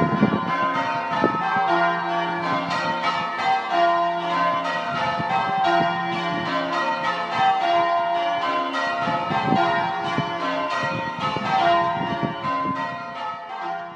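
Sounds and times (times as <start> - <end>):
church bells ringing: 0.0 - 13.9.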